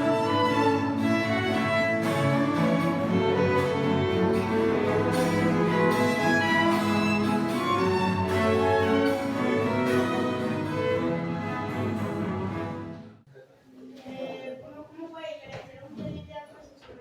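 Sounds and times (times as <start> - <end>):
string ensemble playing: 0.0 - 13.2.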